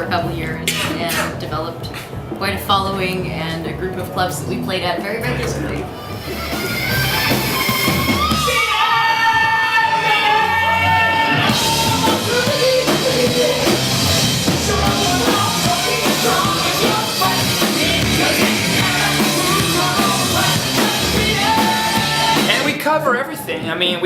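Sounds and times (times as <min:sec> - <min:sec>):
drums and cymbals: 0:00.0 - 0:03.3, 0:05.4 - 0:24.0
rock band playing: 0:00.0 - 0:24.0
person singing: 0:08.2 - 0:22.7.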